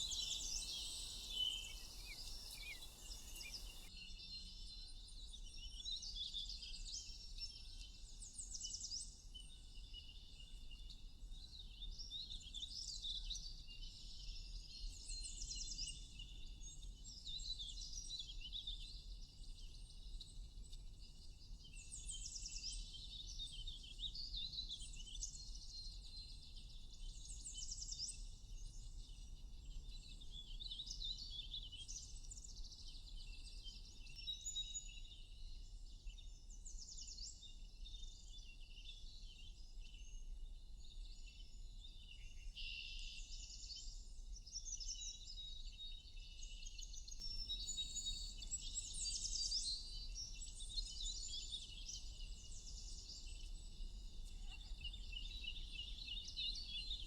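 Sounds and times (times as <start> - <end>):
small birds chirping and trilling: 0.0 - 3.9, 47.2 - 57.0.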